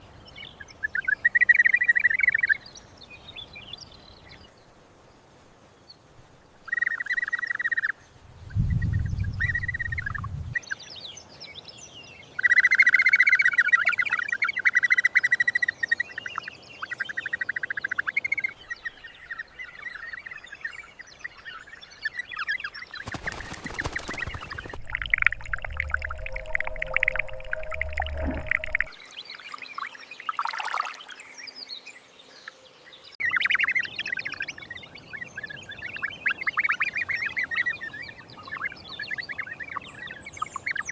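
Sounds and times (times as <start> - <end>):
birds chattering trills: 15.8 - 29.0
low rumble: 24.4 - 29.0
loud rushing noise: 24.7 - 28.9.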